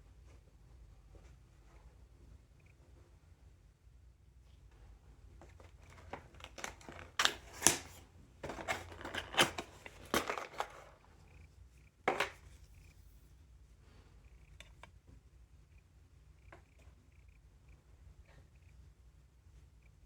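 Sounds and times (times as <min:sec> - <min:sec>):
packaging crinkling and tearing: 0:05.9 - 0:10.8.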